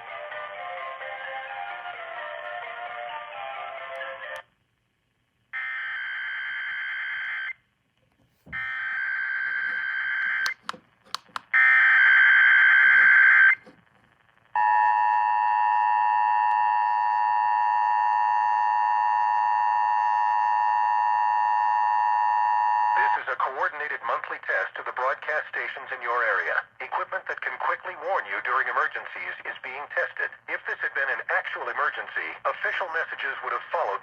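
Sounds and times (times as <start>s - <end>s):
sharp clicks: 10.4s - 11.6s.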